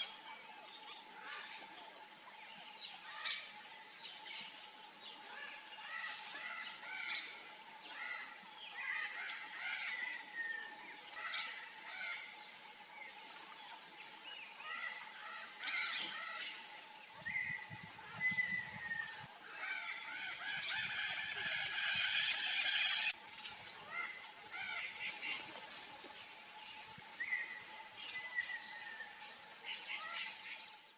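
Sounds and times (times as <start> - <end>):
high-pitched insect drone: 0.0 - 30.9
wild birds chirping and calling: 2.4 - 25.7.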